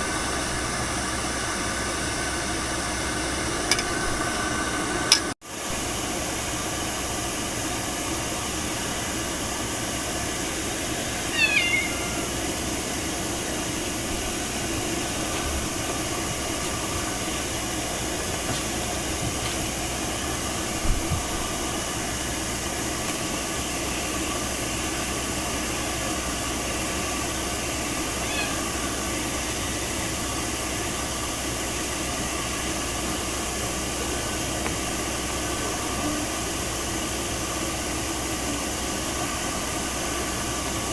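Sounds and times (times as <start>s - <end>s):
cat meowing: 11.3s - 12.4s, 28.2s - 28.9s.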